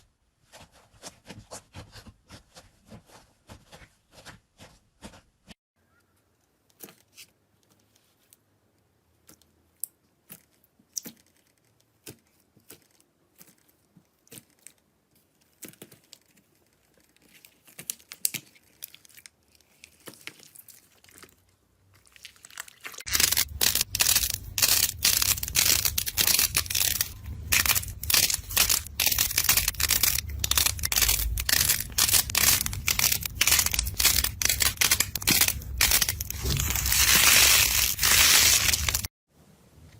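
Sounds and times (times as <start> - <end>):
slime squishing by hand: 9.2 - 39.1.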